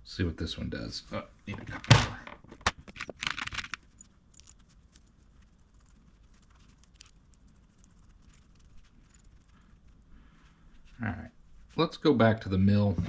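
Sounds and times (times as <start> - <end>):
small metal parts clicking: 2.8 - 9.5.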